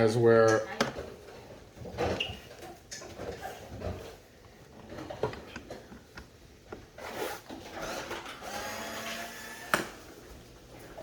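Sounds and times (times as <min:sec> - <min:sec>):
drill motor whirring: 0:07.8 - 0:10.0.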